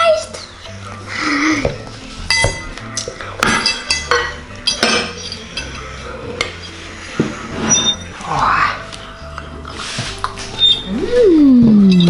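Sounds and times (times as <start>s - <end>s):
cutlery clinking on plates: 2.2s - 8.1s.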